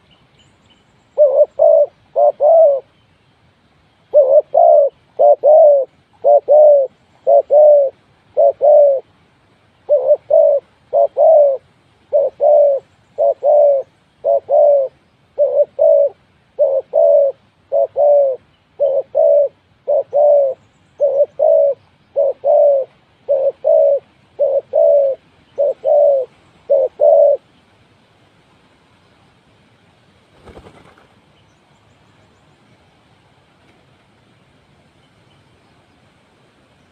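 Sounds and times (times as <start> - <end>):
dove cooing: 1.2 - 2.9, 4.1 - 9.1, 9.8 - 27.5.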